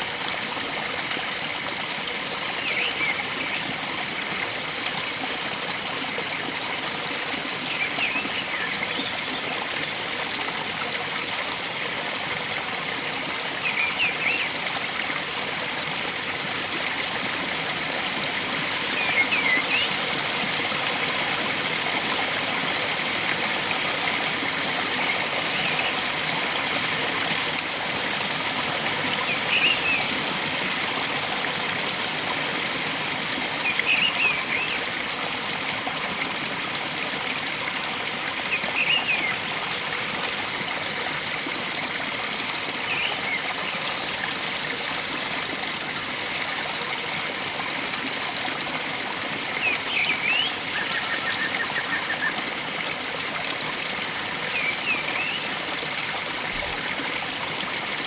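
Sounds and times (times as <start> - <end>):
stream flowing: 0.0 - 58.0.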